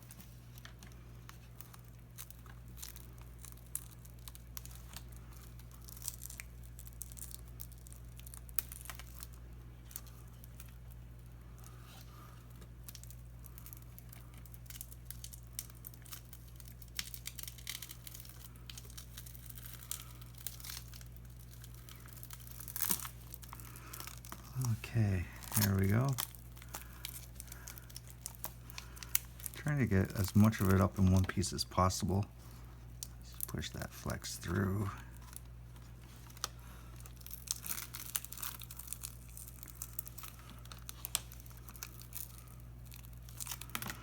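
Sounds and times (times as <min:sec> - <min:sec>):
steady low hum: 0:00.0 - 0:44.0
glass crackling and tearing: 0:01.6 - 0:10.9, 0:12.8 - 0:31.4, 0:36.2 - 0:44.0.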